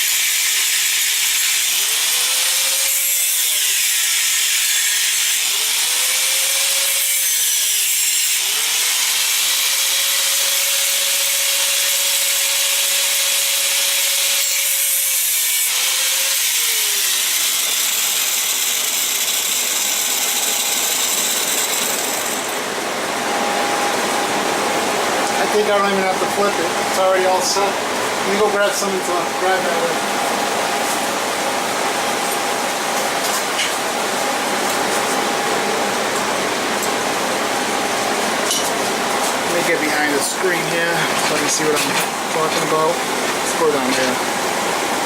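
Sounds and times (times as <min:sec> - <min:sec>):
angle grinder cutting metal: 0:00.0 - 0:22.6, 0:38.5 - 0:44.2.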